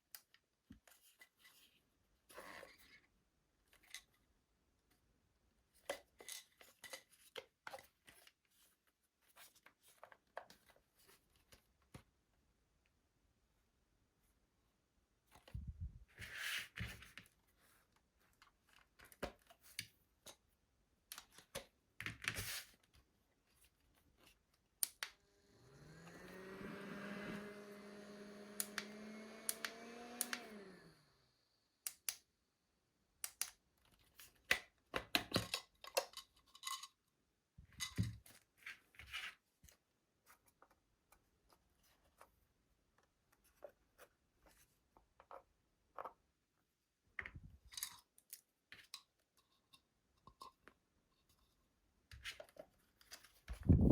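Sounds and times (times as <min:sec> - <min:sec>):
small electric fan motor humming: 0:24.9 - 0:32.2
plastic gadget handling clicks: 0:28.4 - 0:30.6.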